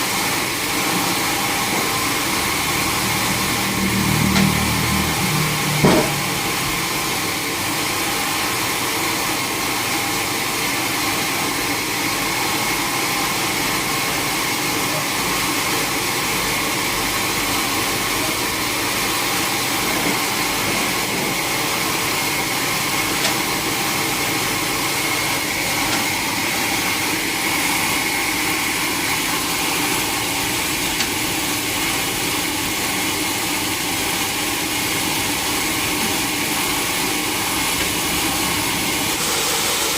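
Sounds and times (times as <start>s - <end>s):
sawmill machinery drone: 0.0s - 39.9s.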